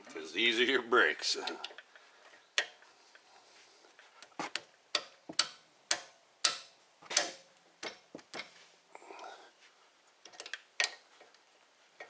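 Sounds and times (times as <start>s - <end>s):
ratchet wrench clicking: 5.0s - 7.4s.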